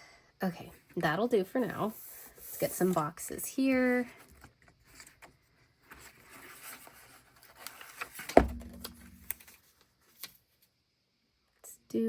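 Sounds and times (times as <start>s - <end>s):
sticker sheets rustling: 1.6s - 10.4s.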